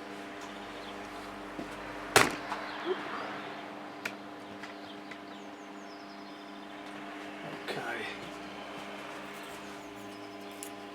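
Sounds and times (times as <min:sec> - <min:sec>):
welder electrical hum: 0:00.0 - 0:10.9.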